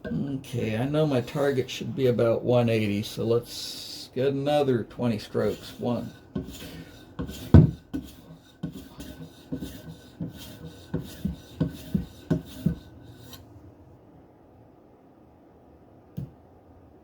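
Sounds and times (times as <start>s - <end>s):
knife edge rasping on strop: 5.4s - 13.4s.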